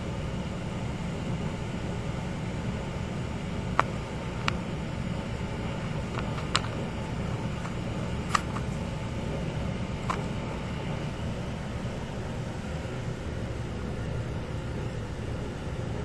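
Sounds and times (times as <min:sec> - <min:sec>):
claws clicking on door scratcher: 0:05.8 - 0:09.1.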